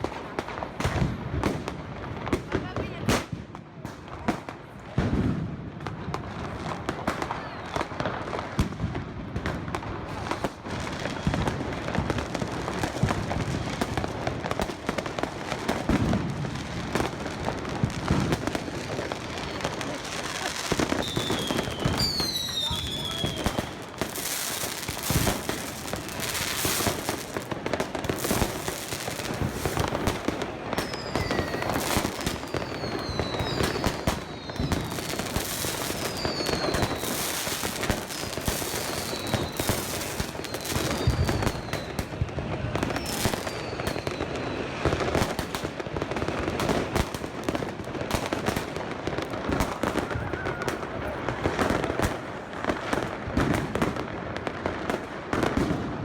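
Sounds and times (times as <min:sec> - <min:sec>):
fireworks bangs and crackle: 0:00.0 - 0:56.0
falling firework whistles: 0:10.8 - 0:11.9, 0:17.9 - 0:45.7.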